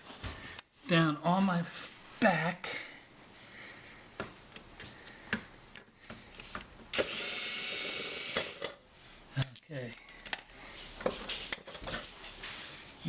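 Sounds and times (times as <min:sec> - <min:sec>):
power drill driving out screw: 0:06.9 - 0:08.7.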